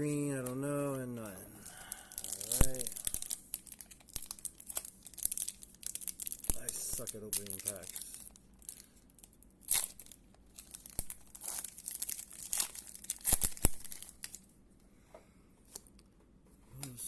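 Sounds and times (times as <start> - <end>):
wrapper tearing and crinkling: 1.6 - 14.5.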